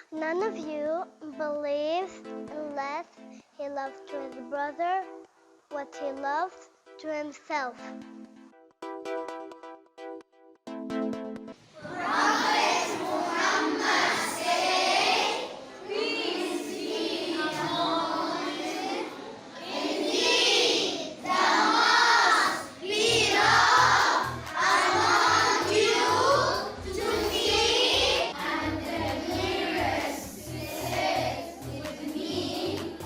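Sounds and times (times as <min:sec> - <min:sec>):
children singing in chorus: 0:11.8 - 0:33.0.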